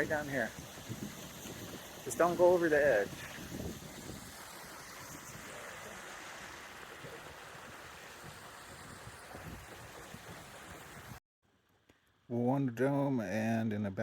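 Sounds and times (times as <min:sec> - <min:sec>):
water rushing over falls: 0:00.0 - 0:11.2.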